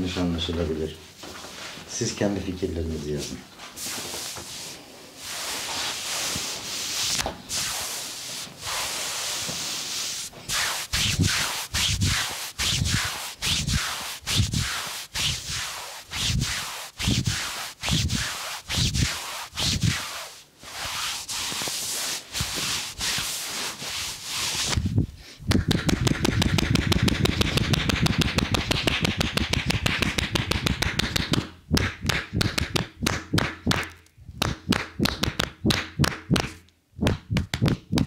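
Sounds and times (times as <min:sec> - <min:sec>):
hands rubbing skin: 0:03.2 - 0:24.9, 0:25.5 - 0:35.6
rhythmic massage thumping: 0:25.5 - 0:38.0.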